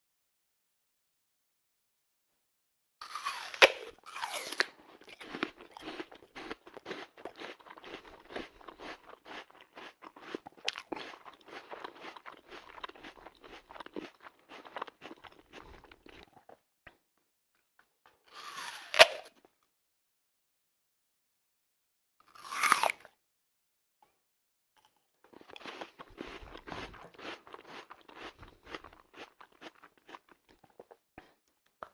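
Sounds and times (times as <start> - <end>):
dog crunching apple bite: 3.0 - 16.5, 22.3 - 23.1, 25.4 - 30.9
rapid crunchy chewing: 3.1 - 16.6, 25.3 - 31.9.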